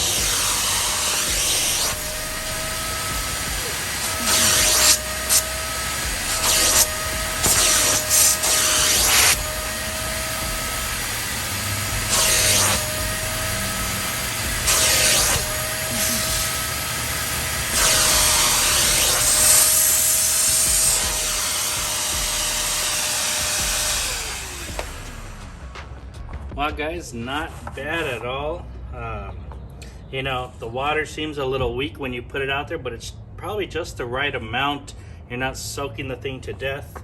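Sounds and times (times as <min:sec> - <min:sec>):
vacuum motor whine: 0:00.0 - 0:25.6
hissing spray and suction: 0:00.0 - 0:25.7.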